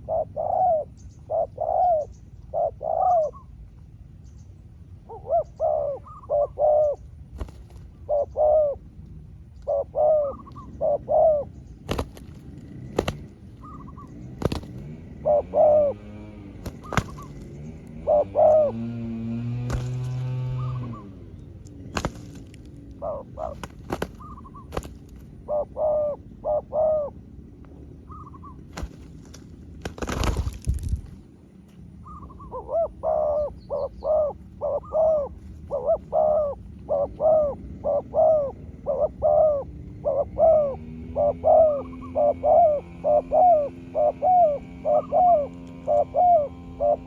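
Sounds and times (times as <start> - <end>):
doves cooing: 0.0 - 3.6, 5.0 - 27.4, 28.0 - 31.2, 31.9 - 47.0.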